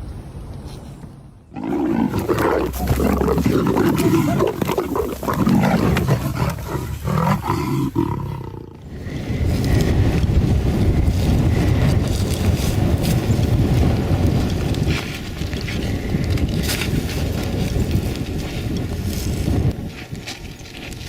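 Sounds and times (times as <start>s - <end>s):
large animal roaring: 1.6s - 9.1s.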